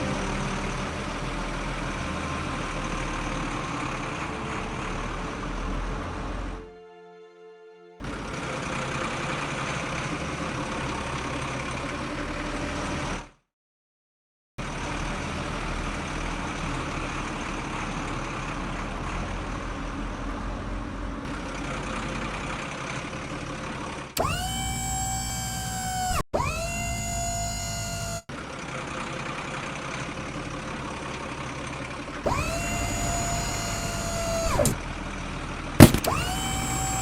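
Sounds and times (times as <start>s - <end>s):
machine engine running: 24.2s - 28.2s, 32.2s - 34.8s, 35.8s - 37.0s.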